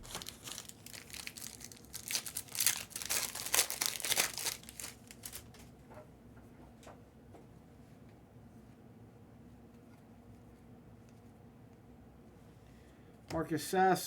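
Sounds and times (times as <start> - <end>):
foil wrapper crinkling and tearing: 0.0 - 5.7.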